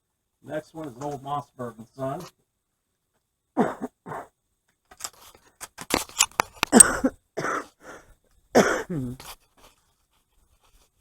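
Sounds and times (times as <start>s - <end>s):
breathy cough-like sounds: 3.6s - 4.4s, 6.7s - 8.0s, 8.6s - 9.2s.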